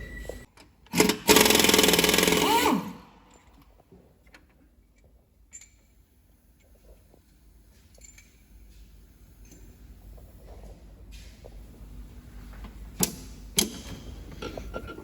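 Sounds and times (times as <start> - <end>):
pneumatic impact wrench rattling: 0.9 - 3.5
faint metal clinks: 7.7 - 8.8.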